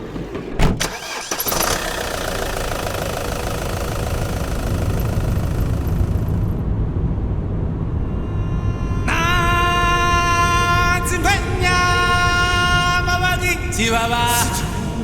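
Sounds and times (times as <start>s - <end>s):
vehicle engine starting and running: 0.0s - 14.5s.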